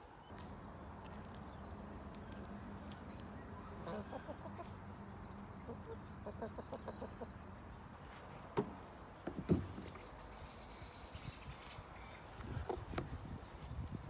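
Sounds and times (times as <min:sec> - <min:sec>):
soft thuds: 0:08.4 - 0:10.0
dull knocks: 0:08.5 - 0:09.9.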